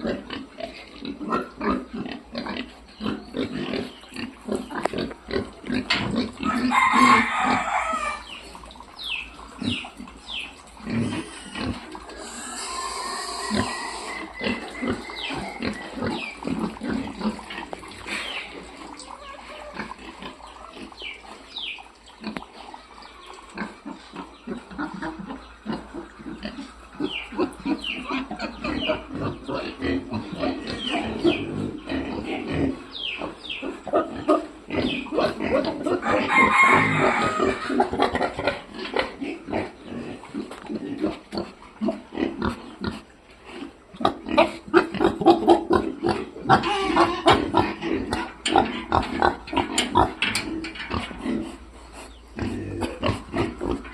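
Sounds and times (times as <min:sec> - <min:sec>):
piglets grunting and snuffling: 0:00.0 - 0:53.9
piglets squealing: 0:06.4 - 0:08.4, 0:11.2 - 0:17.0, 0:18.9 - 0:21.0, 0:27.0 - 0:38.4, 0:44.3 - 0:47.8.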